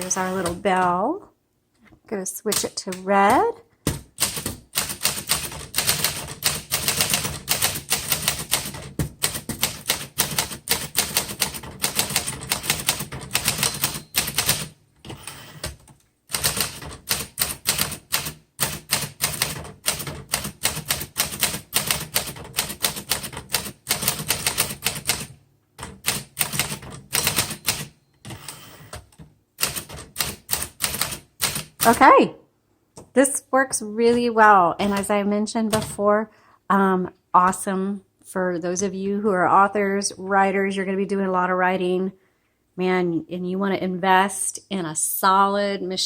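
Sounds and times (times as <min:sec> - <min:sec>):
manual typewriter typing: 0:00.0 - 0:01.0, 0:02.5 - 0:32.0, 0:34.1 - 0:36.0.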